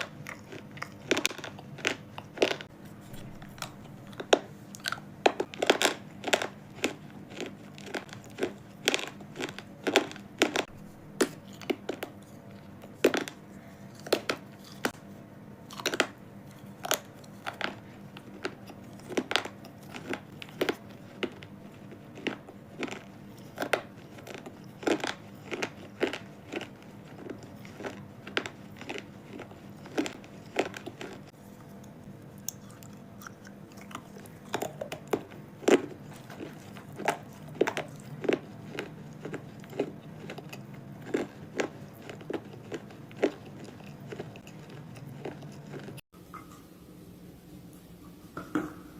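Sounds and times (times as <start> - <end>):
crunching while chewing: 0.0 - 46.5
faint steady hum: 0.0 - 48.9.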